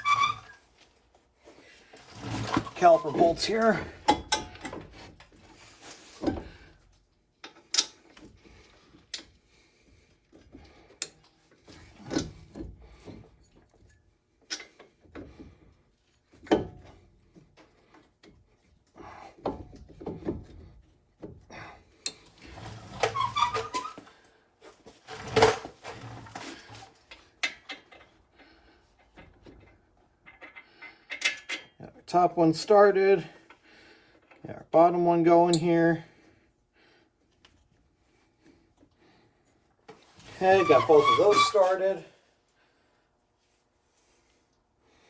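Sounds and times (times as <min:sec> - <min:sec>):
metal clunks and scrapes: 0:02.0 - 0:06.6, 0:40.0 - 0:42.0.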